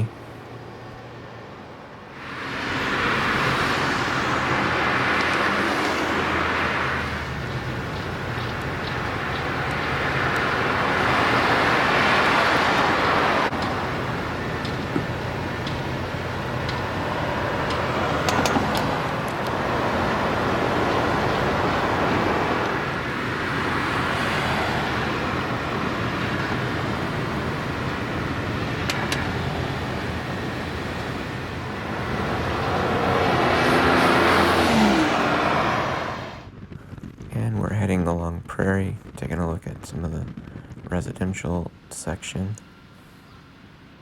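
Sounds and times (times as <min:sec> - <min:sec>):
road traffic: 0:00.0 - 0:44.0
engine rising and falling in pitch: 0:02.1 - 0:36.7.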